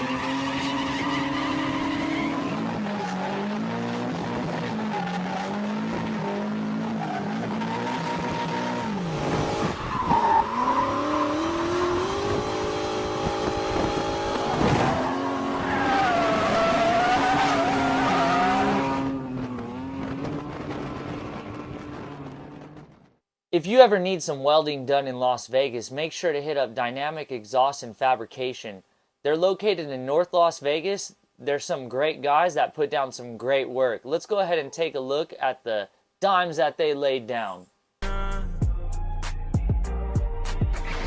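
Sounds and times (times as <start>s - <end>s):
tyres squealing and skidding: 0.0s - 13.2s, 14.2s - 20.2s
car engine revving hard: 0.0s - 22.9s.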